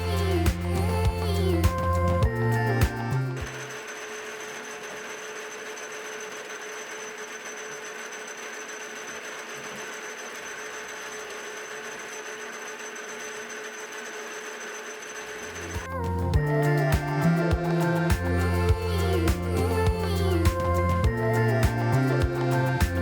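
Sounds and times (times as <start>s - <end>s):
high whine: 0.0s - 3.8s, 15.4s - 23.0s.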